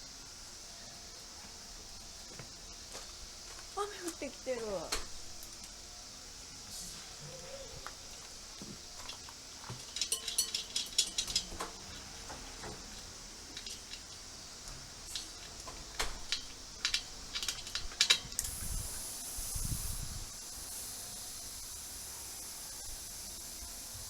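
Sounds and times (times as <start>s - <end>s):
short hiss: 6.7s - 7.4s, 18.3s - 24.0s
metallic clinks of hand tools: 9.8s - 11.6s.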